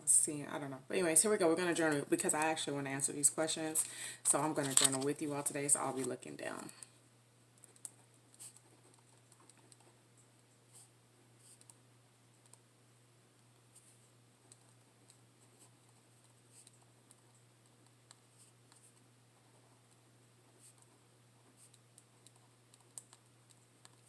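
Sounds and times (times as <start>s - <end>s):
pen clicks while writing: 7.6s - 10.4s, 11.4s - 11.8s, 19.9s - 24.0s.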